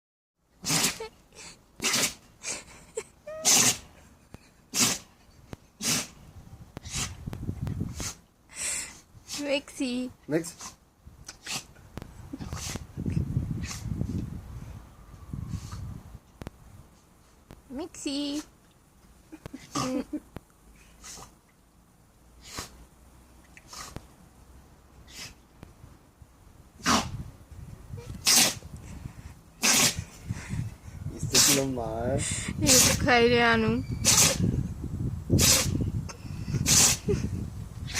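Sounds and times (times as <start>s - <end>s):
dog sneezing: 0.6s - 1.2s, 1.8s - 2.2s, 3.4s - 3.9s, 4.7s - 5.1s, 5.8s - 6.2s, 10.5s - 11.7s, 22.4s - 22.8s, 25.1s - 25.4s, 26.8s - 27.1s, 28.2s - 28.6s, 29.6s - 30.0s, 31.4s - 31.7s, 32.7s - 33.0s, 34.0s - 34.4s, 35.4s - 35.8s, 36.6s - 37.1s
rising squeak: 33.8s - 34.2s.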